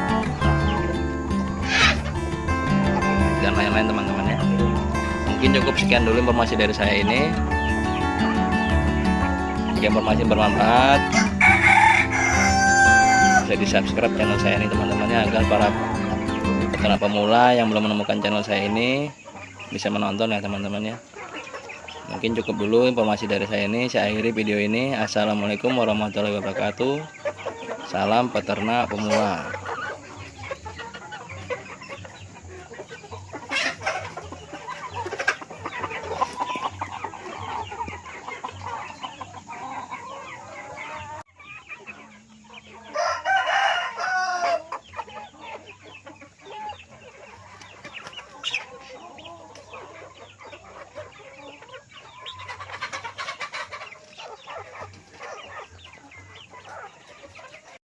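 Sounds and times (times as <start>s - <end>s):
chickens clucking: 0.0s - 57.8s
rooster crowing: 10.4s - 16.6s, 42.8s - 44.8s.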